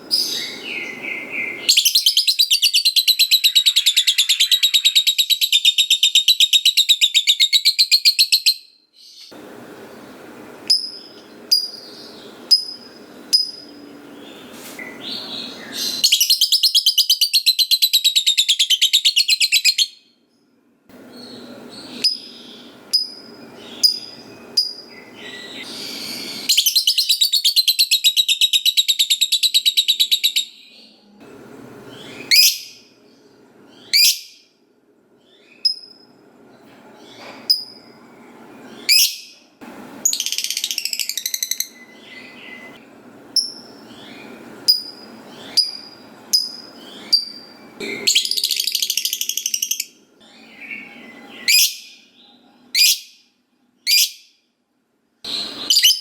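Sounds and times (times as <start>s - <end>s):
lovebird chirps and squeaks: 43.4s - 49.8s, 55.3s - 56.0s
lovebird chattering trill: 43.4s - 49.9s.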